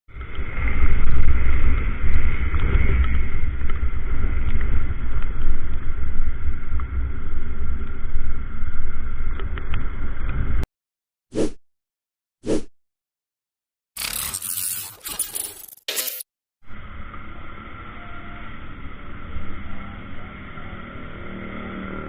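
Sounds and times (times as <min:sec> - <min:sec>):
wind rumble: 0:00.1 - 0:10.6
motorcycle engine running: 0:16.7 - 0:22.0.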